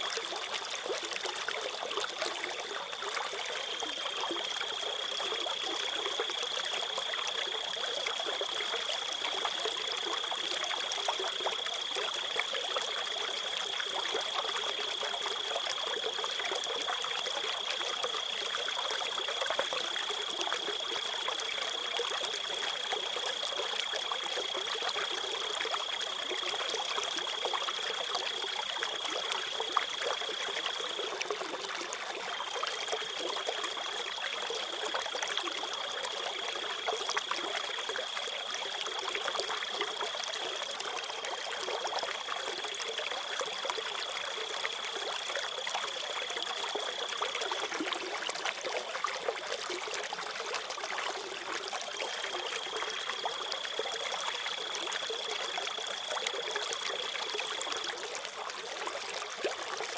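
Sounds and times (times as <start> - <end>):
water trickling: 0.0 - 59.9
cricket trilling: 52.1 - 57.9.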